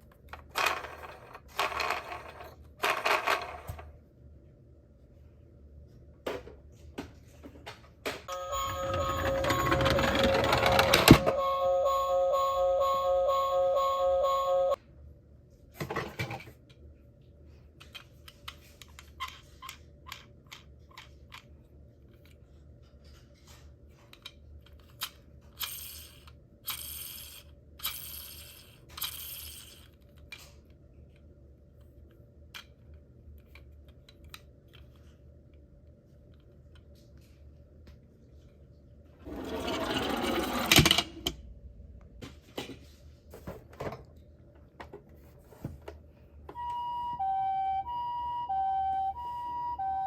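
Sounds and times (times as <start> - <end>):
toy car siren pulsing: 8.3 - 14.8, 46.6 - 50.0
toy car scraping: 8.5 - 11.4, 39.2 - 41.2.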